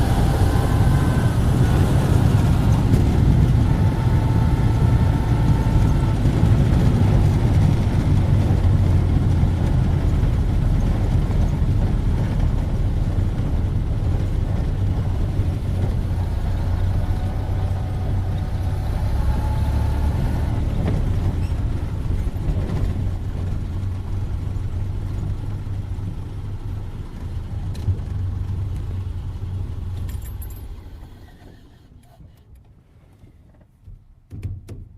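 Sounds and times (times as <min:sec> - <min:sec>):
car engine running: 0:00.0 - 0:31.4
faint engine whine: 0:00.0 - 0:33.7.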